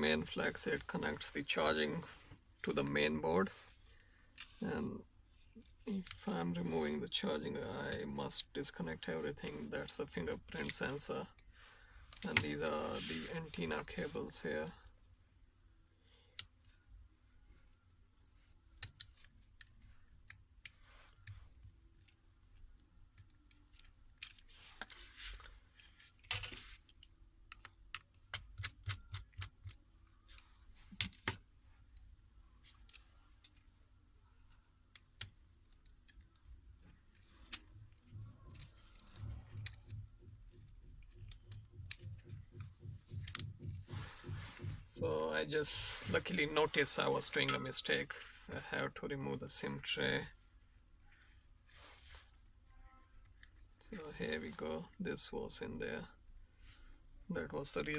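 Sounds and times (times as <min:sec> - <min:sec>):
hand tool clicks and taps: 0:27.5 - 0:29.8, 0:39.2 - 0:44.8.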